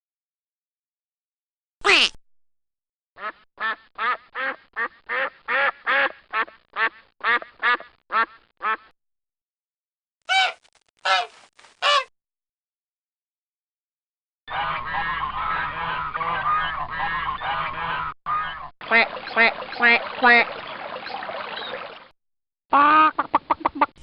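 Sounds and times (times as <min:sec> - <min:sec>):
duck quacking: 0:03.2 - 0:08.9, 0:10.3 - 0:12.1, 0:14.5 - 0:21.7.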